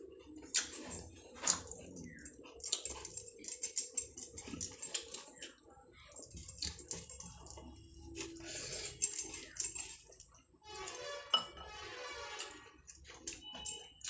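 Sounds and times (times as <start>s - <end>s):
chewing with wet mouth clicks: 0.2s - 10.4s.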